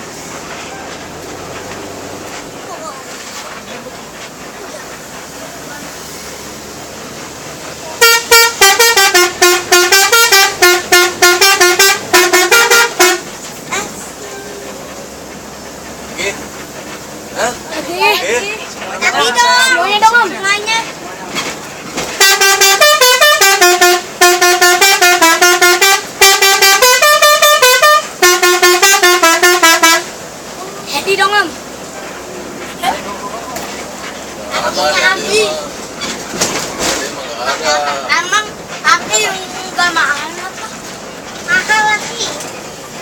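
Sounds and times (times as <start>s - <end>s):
musical air horn tune: 8.0s - 13.3s, 22.2s - 30.1s.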